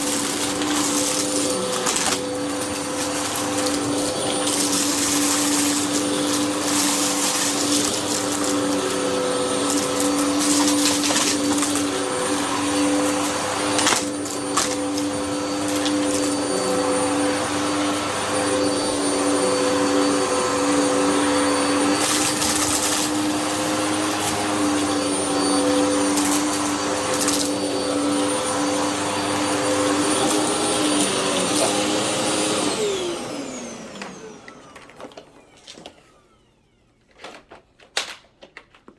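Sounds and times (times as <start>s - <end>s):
vacuum motor winding down: 0.0s - 36.9s
vacuum cleaner running: 0.0s - 37.4s.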